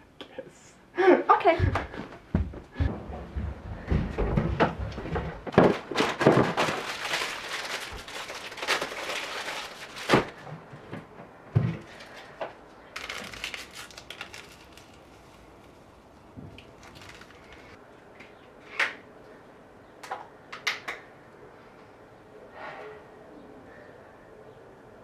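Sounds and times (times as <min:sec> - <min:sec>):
objects knocking and clicking: 0:01.6 - 0:09.0.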